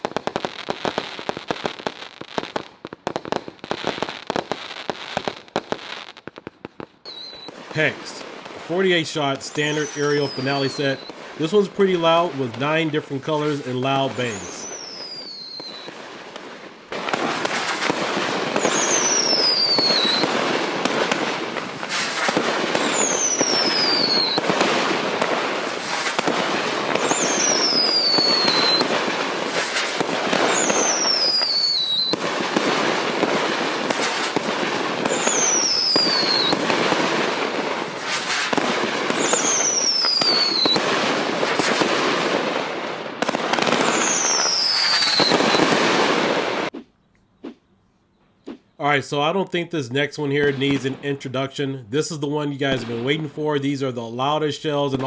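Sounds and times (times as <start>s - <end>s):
fireworks bangs and crackling: 0.0s - 47.6s, 49.9s - 55.0s
falling whistle: 7.1s - 7.5s, 14.4s - 15.9s, 18.6s - 20.3s, 22.9s - 24.4s, 27.1s - 28.8s, 30.5s - 32.2s, 35.2s - 36.6s, 39.2s - 40.8s, 43.9s - 45.8s.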